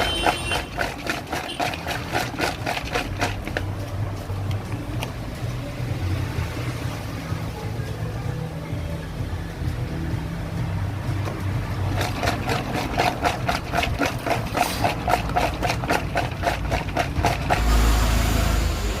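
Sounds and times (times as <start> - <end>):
fast even tapping beat: 0.0 - 3.8, 11.8 - 17.7
loud low rumble with hiss: 17.5 - 19.0.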